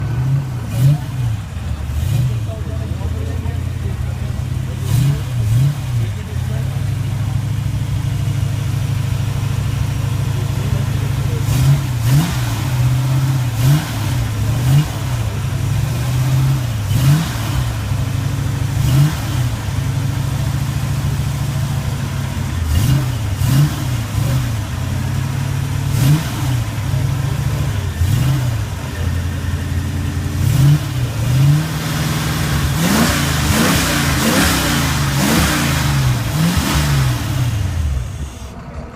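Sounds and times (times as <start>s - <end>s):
car engine revving: 0.0s - 38.9s.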